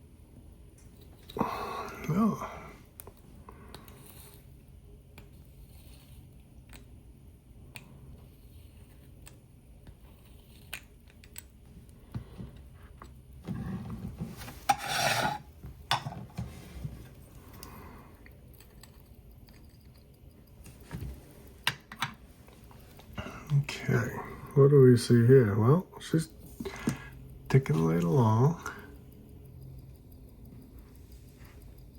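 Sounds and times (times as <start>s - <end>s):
rubbing scrape: 13.5s - 15.5s
light clicks of watch tools: 26.0s - 31.9s.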